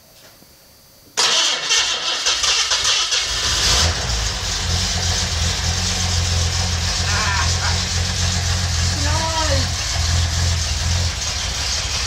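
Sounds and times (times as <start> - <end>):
car engine running: 3.2 - 12.0.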